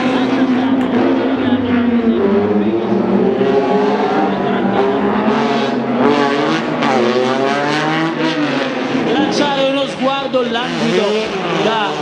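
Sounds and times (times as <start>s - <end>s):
rally car engine revving: 0.0s - 12.0s.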